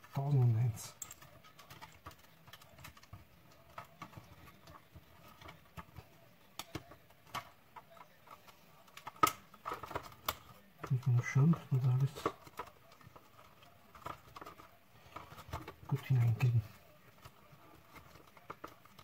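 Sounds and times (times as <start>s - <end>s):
small parts clicking and rattling: 0.0s - 19.0s.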